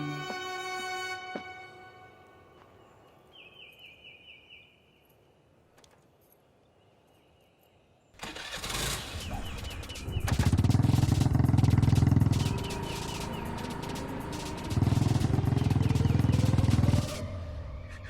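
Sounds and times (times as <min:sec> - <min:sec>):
vehicle engine starting and running: 0:08.2 - 0:18.0.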